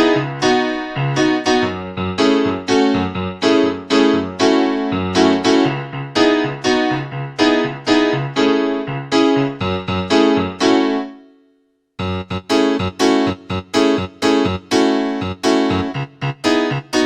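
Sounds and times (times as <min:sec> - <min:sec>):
keyboard piano chords: 0:00.0 - 0:17.0
bass line: 0:12.0 - 0:16.9.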